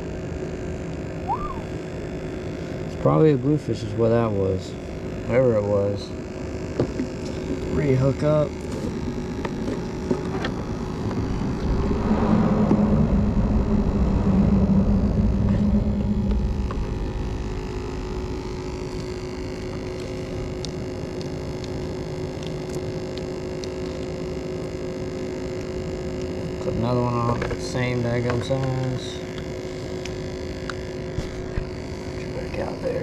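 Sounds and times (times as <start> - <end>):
steady low hum: 0.0 - 33.0
vehicle rumbling over bridge: 11.2 - 17.7.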